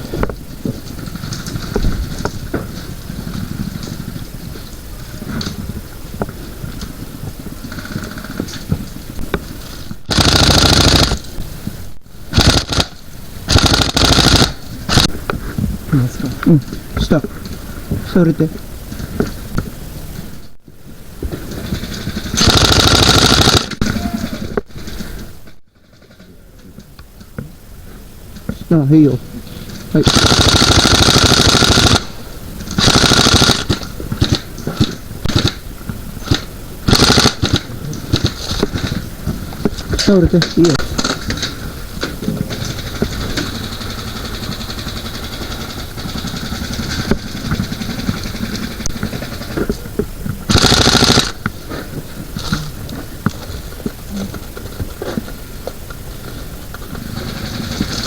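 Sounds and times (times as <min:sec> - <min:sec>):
airsoft gun automatic bursts: 0:10.1 - 0:11.3, 0:12.3 - 0:15.1, 0:21.6 - 0:24.3, 0:30.0 - 0:39.0, 0:42.6 - 0:49.6, 0:50.5 - 0:51.5, 0:57.0 - 0:58.0.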